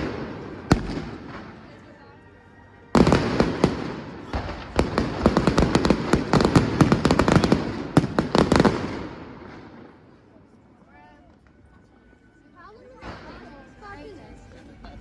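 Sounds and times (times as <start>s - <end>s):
fireworks bursting: 0.0s - 1.8s, 3.0s - 10.0s.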